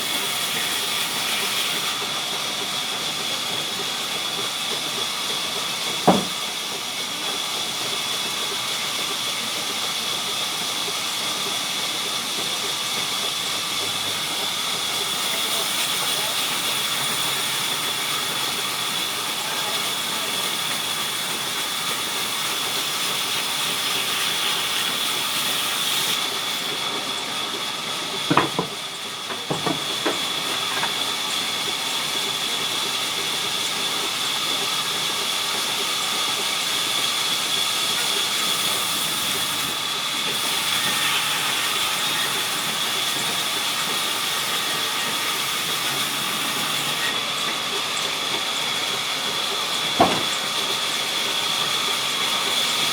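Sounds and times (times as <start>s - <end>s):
sawmill saw whining: 0.0s - 52.9s
sharp knocks: 6.0s - 6.4s, 28.3s - 30.9s, 50.0s - 50.5s.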